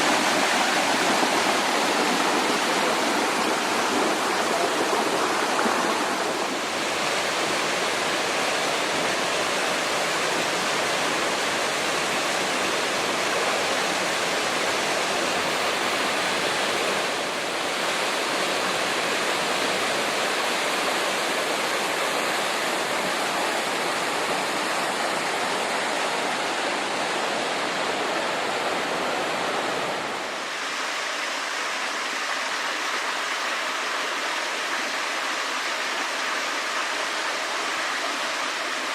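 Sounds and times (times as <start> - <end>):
stream rushing over rocks: 0.0 - 38.9.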